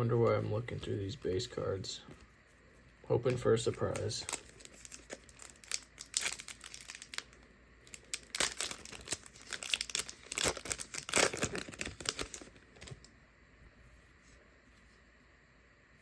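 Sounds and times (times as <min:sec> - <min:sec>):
cards rustling: 0:03.2 - 0:13.0
wrappers crinkling: 0:03.2 - 0:13.0.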